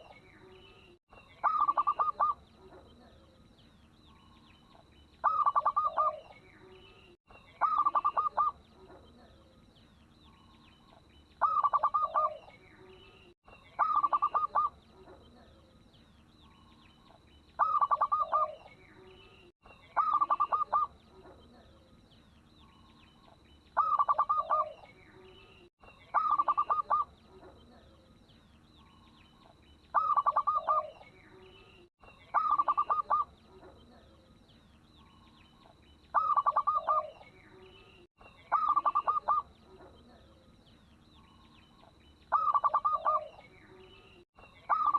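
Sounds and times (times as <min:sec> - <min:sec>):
dove cooing: 0:01.4 - 0:03.3, 0:05.2 - 0:06.4, 0:07.6 - 0:09.4, 0:11.4 - 0:12.5, 0:13.8 - 0:15.5, 0:17.6 - 0:18.8, 0:20.0 - 0:21.8, 0:23.8 - 0:24.9, 0:26.1 - 0:27.9, 0:29.9 - 0:31.1, 0:32.3 - 0:34.1, 0:36.1 - 0:37.3, 0:38.5 - 0:40.4, 0:42.3 - 0:43.5, 0:44.7 - 0:44.9.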